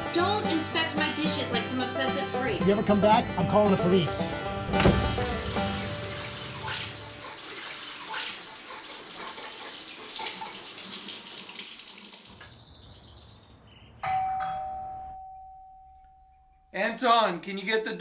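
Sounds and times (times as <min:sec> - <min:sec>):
tap water running into sink: 0:04.8 - 0:12.5
doorbell chime: 0:14.0 - 0:16.7.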